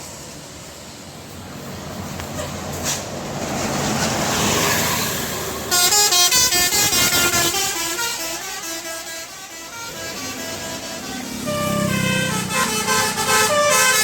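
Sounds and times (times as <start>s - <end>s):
road noise: 0.0s - 14.0s
musical bus air horn melody: 5.7s - 14.0s.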